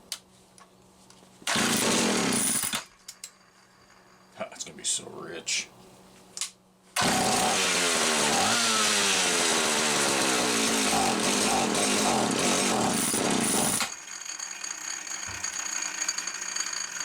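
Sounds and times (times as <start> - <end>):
chainsaw engine revving: 1.5 - 2.8, 7.0 - 14.0.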